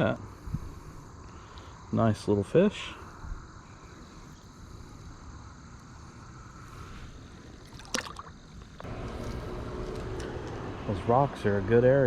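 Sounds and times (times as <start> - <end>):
river water gurgling: 7.5 - 8.7
water splash: 7.6 - 8.4.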